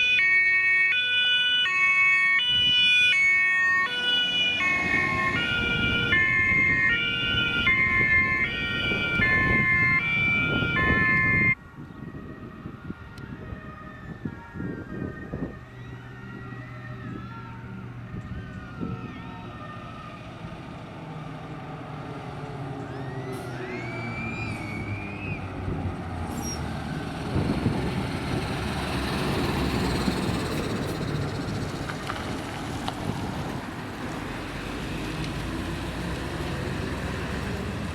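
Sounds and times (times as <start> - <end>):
two-tone emergency siren: 0.0 - 21.8, 22.6 - 25.7
vehicle engine and road rumble: 0.0 - 37.9.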